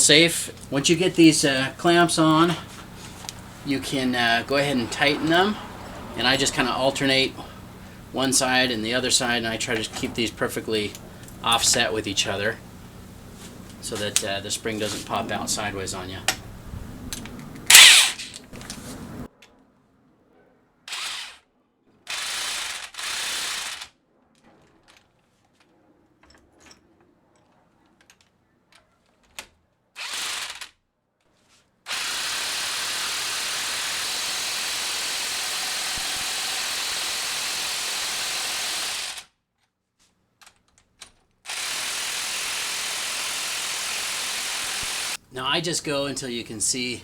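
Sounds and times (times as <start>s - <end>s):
power tool running: 0.5s - 16.7s, 17.6s - 19.3s, 20.9s - 21.4s, 22.1s - 23.8s, 30.0s - 30.6s, 31.9s - 39.3s, 41.5s - 45.2s.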